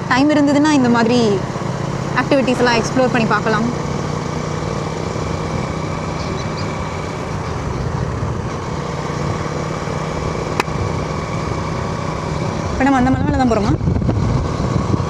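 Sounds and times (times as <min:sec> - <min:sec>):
vehicle engine hum and road noise: 0:00.0 - 0:15.0.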